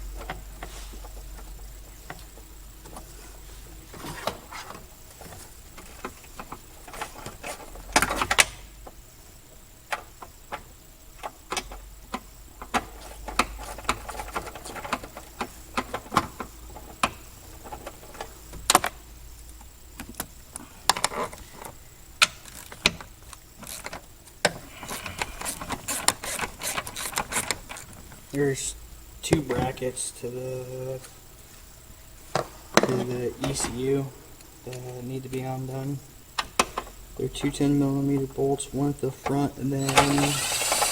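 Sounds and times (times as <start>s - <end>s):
parts clattering: 39.1s - 40.9s.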